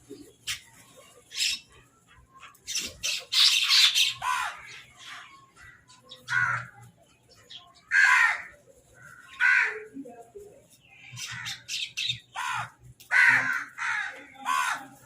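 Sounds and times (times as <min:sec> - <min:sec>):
crows cawing: 0:03.8 - 0:06.9, 0:07.9 - 0:10.0, 0:11.2 - 0:15.0.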